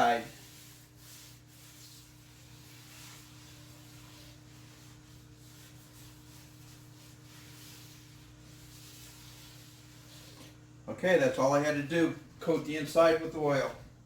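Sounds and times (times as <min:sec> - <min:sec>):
soft rubbing in cast iron pot: 0:00.0 - 0:10.7
steady low hum: 0:00.0 - 0:14.0.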